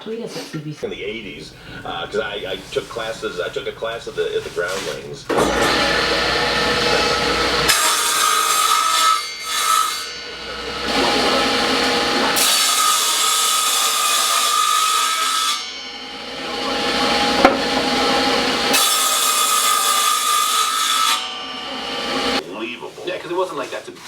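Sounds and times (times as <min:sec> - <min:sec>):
rough cutting or sanding noise: 0:01.9 - 0:24.0
power tool motor whine: 0:05.3 - 0:08.5.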